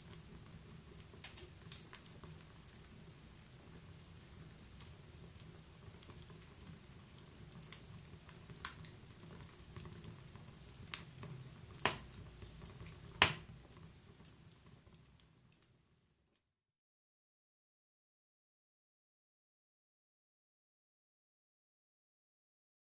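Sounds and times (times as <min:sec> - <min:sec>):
wood crackling: 0:00.9 - 0:02.9, 0:06.0 - 0:13.5
sharp pops of burning wood: 0:01.1 - 0:02.0, 0:10.9 - 0:13.6.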